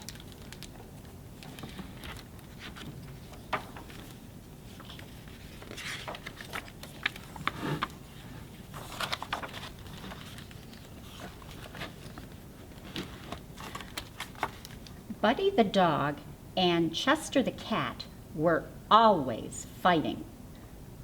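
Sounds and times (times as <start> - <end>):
paper rustling: 0.0 - 14.8
book pages turning: 0.0 - 15.0.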